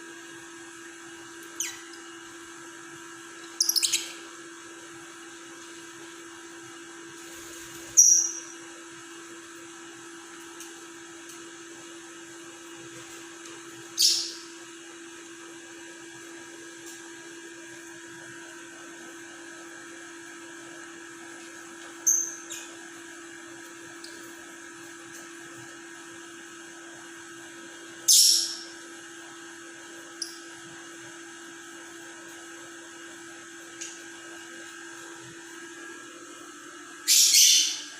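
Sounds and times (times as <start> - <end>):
electrical hum: 0.0 - 37.9
lovebird chirping: 3.6 - 4.2, 14.0 - 14.4, 37.1 - 37.8.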